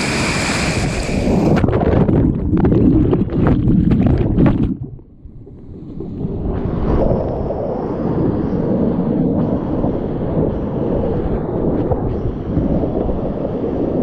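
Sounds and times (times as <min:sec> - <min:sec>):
whitewater rushing: 0:00.0 - 0:01.6
microphone rumble: 0:00.0 - 0:14.0.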